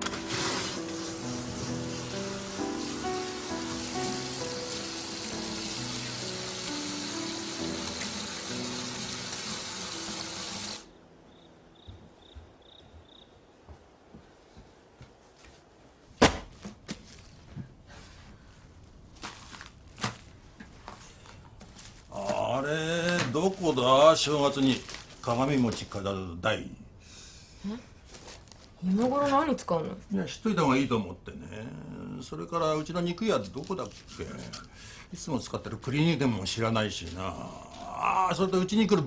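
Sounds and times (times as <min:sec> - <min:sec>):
steady hiss: 0:00.0 - 0:11.0
background music: 0:00.0 - 0:11.8.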